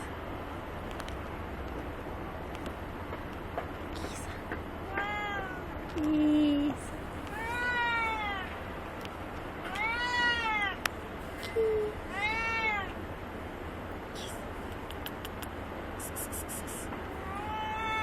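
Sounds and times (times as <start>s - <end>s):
cat meowing: 4.9s - 5.8s, 7.3s - 8.6s, 9.6s - 10.9s, 12.1s - 13.0s, 17.2s - 18.0s.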